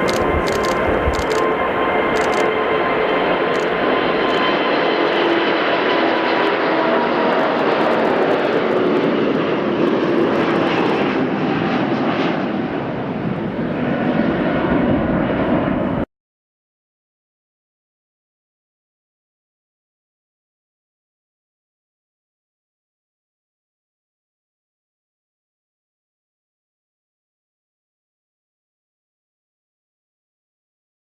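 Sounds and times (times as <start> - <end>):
jet engines roaring with whine: 0.0 - 16.1.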